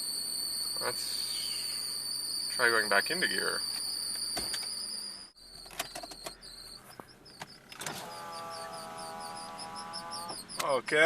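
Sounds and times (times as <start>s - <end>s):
drive belt squealing: 0.7s - 11.0s
car engine idling: 5.4s - 11.0s.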